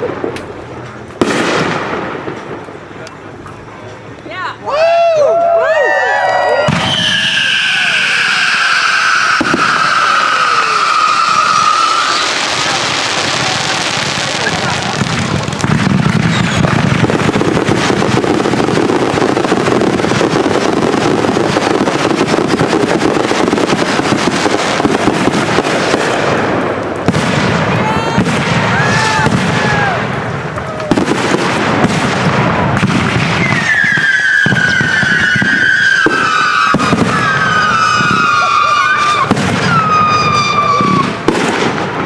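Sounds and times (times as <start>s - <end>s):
fireworks crackling and popping: 0.0s - 42.0s
falling firework whistles: 5.8s - 14.7s, 15.8s - 25.2s, 32.8s - 41.9s.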